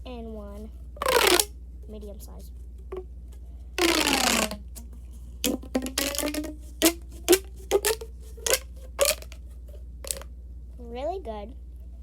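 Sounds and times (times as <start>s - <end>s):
plastic pop tube popping: 1.0s - 1.5s, 3.8s - 9.4s, 10.0s - 10.3s
plastic pop tube stretching: 1.0s - 1.5s, 2.7s - 3.1s, 3.8s - 10.3s.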